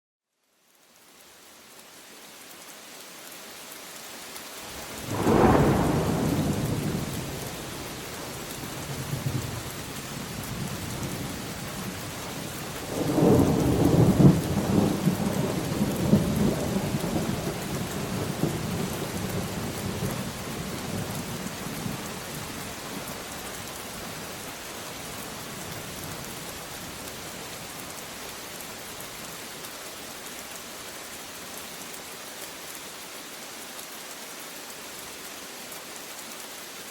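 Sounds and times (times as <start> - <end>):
steady rain: 0.3 - 36.9
thunder: 4.9 - 7.6, 12.9 - 21.2.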